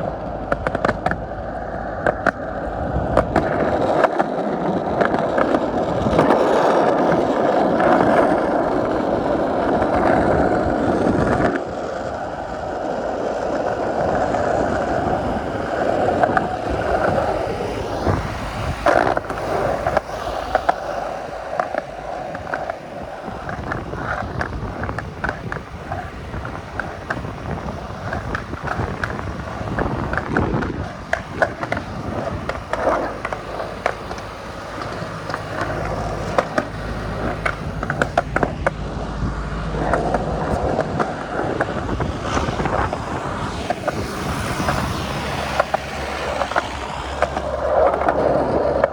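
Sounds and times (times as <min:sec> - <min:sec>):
skateboard wheels rolling on pavement: 0:00.0 - 0:48.9
sharp clicks and knocks: 0:02.0 - 0:02.4.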